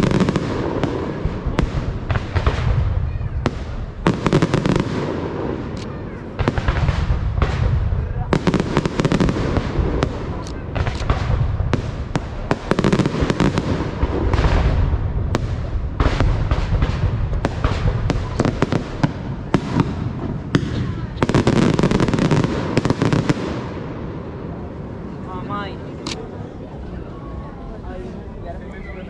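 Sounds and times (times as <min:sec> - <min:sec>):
fireworks crackling and banging: 0:00.0 - 0:29.0
low rumbling booms: 0:06.4 - 0:25.3.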